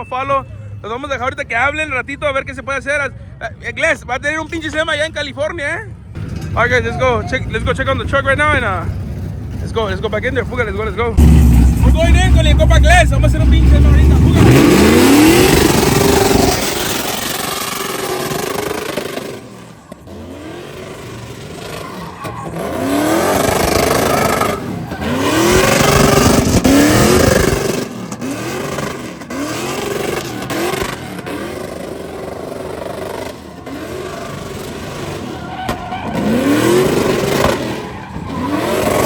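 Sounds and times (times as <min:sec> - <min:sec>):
engine revving hard: 0:11.2 - 0:19.4, 0:20.1 - 0:35.4, 0:36.0 - 0:39.0.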